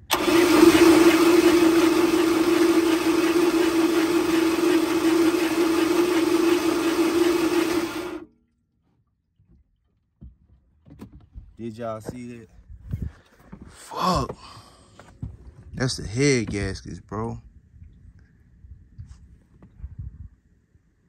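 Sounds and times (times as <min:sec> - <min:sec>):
outboard motor starter whine: 0:00.0 - 0:08.3.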